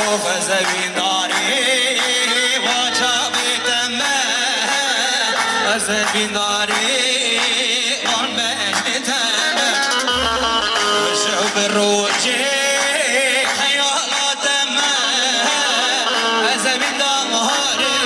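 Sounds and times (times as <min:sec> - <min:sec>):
folk music with wavering melody: 0:08.2 - 0:11.5.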